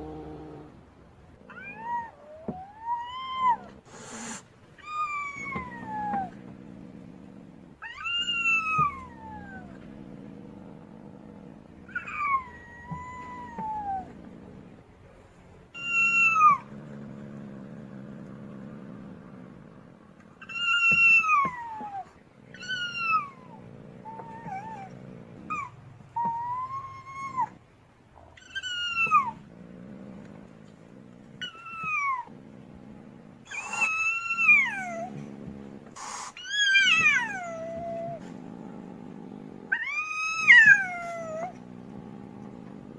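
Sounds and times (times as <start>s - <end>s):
low steady rumble: 4.6s - 35.9s
cat wailing meows: 7.8s - 9.8s, 11.9s - 14.1s, 36.4s - 38.2s, 39.7s - 41.5s.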